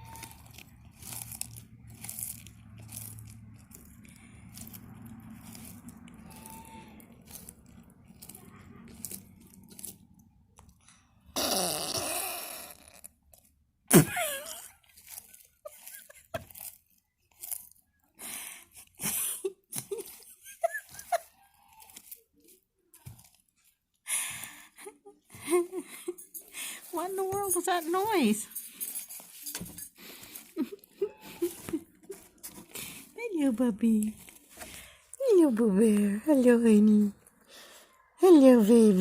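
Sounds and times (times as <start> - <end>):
tortoise burping: 0.0 - 10.3, 11.2 - 16.9.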